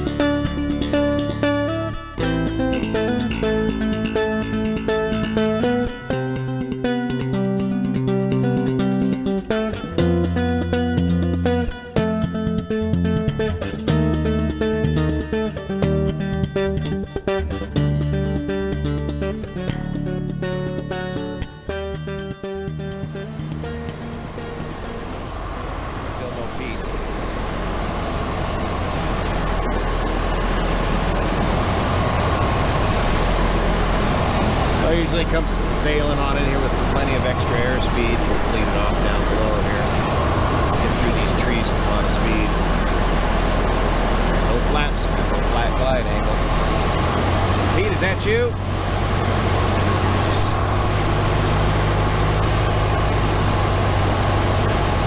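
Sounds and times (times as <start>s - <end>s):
airplane cockpit engine and wind: 22.8s - 55.0s.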